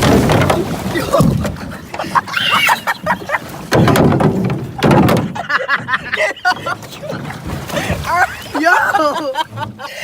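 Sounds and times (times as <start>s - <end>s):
dull thumps: 0.0s - 2.2s, 3.0s - 6.2s.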